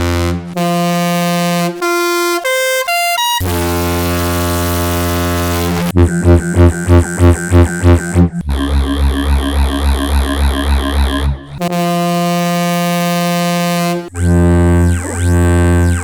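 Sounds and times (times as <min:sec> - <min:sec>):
altered ship horn blasts: 0:00.0 - 0:06.0, 0:11.6 - 0:15.9.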